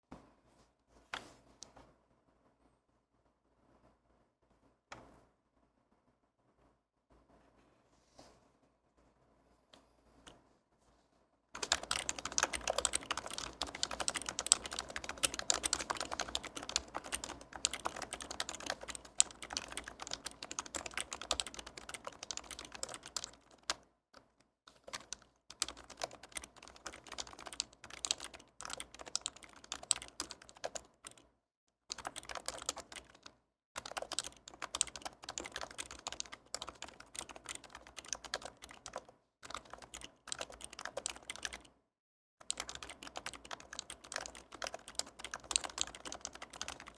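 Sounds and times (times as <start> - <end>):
fast keyboard typing: 11.6 - 31.3, 31.9 - 41.8, 42.4 - 46.9.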